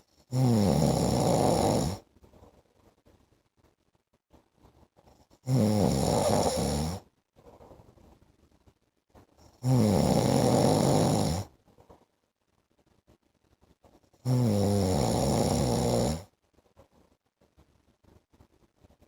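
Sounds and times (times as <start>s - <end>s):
man snoring: 0.3s - 2.0s, 5.5s - 7.0s, 9.6s - 11.5s, 14.3s - 16.3s.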